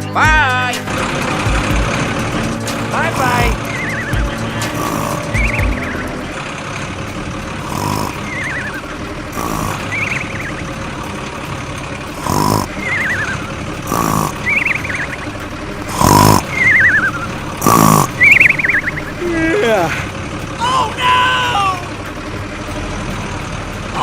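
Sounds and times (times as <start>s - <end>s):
steady mechanical hum: 0.0s - 24.0s
warbling whistles sliding down: 2.6s - 11.5s, 12.6s - 15.6s, 16.3s - 19.4s.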